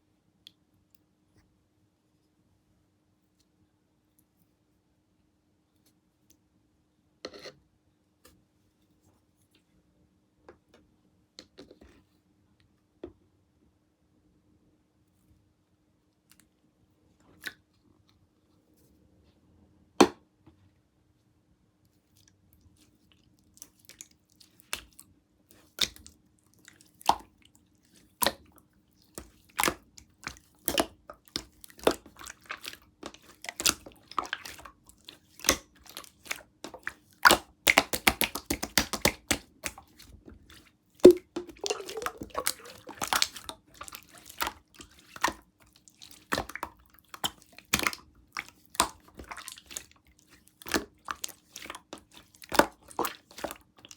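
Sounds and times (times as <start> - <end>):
low slime squelch: 22.0 - 53.9
air bubble pops: 41.0 - 43.5.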